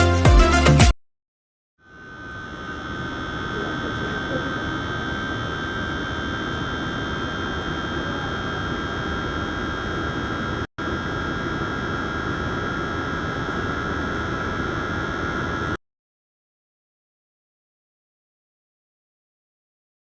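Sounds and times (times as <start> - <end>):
small fan running with motor whine: 1.8 - 15.8.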